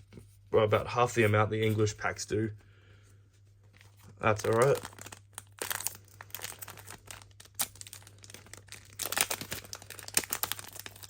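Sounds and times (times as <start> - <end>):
foil wrapper crinkling: 3.7 - 11.0.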